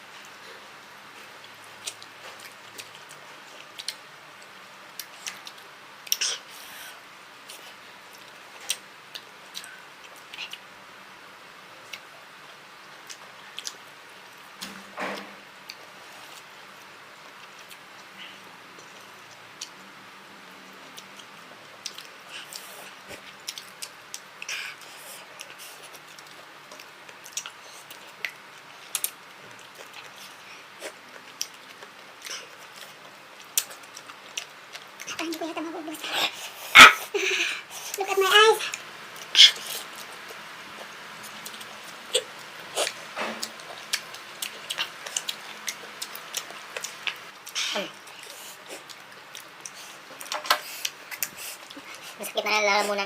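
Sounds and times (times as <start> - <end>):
person chewing noodles: 20.9 - 35.4, 38.6 - 52.2.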